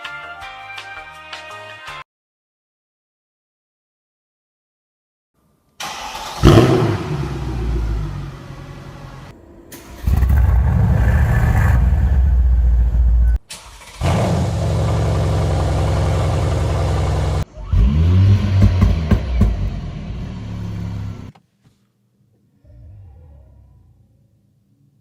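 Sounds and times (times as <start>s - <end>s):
car exhaust revving: 6.4s - 13.3s, 13.9s - 21.3s.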